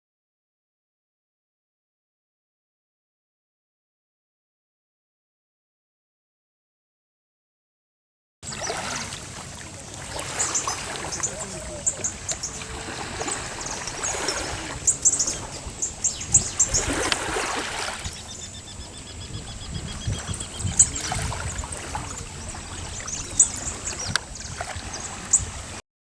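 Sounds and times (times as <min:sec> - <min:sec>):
birds chirping: 0:08.4 - 0:25.8
bird trill: 0:09.8 - 0:25.5.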